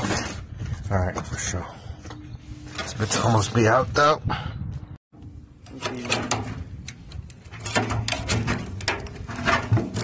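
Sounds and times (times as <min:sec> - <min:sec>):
metallic clanks and rattles: 0:05.6 - 0:10.0.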